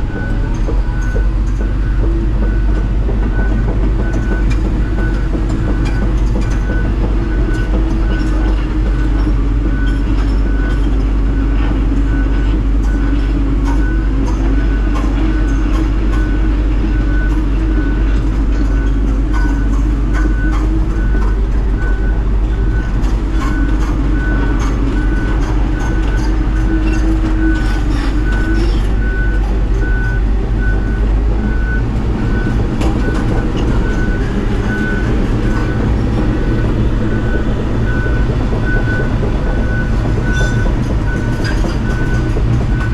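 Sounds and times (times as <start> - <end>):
diesel engine running: 0.0 - 42.9
steel tracks clattering: 0.0 - 42.9
travel alarm beeping: 0.0 - 42.9.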